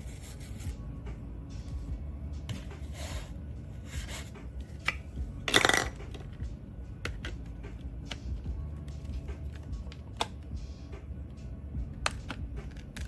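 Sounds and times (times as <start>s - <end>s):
low steady hum: 0.0s - 13.0s
hard objects rubbing and clinking: 2.5s - 6.4s
objects clattering: 4.9s - 6.4s.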